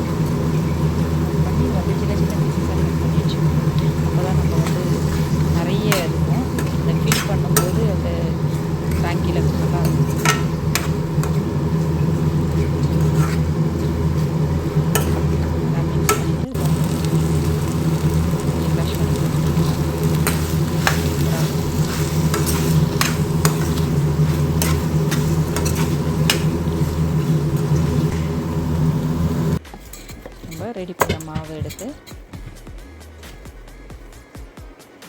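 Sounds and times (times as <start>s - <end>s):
steady low hum: 0.0s - 34.3s
utensil tapping a pan: 3.4s - 16.5s, 18.8s - 28.4s.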